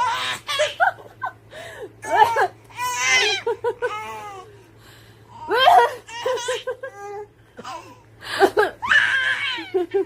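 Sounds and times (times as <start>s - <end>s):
baby giggling: 2.0s - 4.4s.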